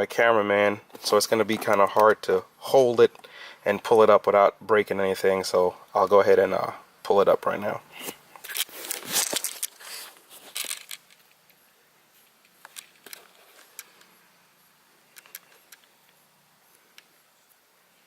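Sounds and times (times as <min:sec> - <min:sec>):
handling noise: 0:07.4 - 0:14.2.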